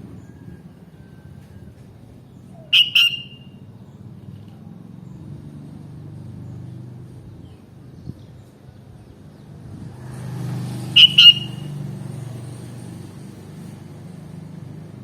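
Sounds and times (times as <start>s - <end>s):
bird giving sharp call notes: 2.6s - 3.6s, 11.0s - 11.8s.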